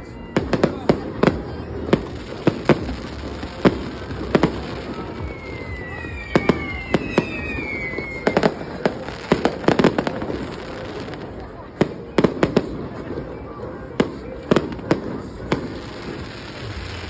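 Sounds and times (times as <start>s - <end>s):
fireworks bangs: 0.1s - 17.0s
falling firework whistles: 2.0s - 11.2s.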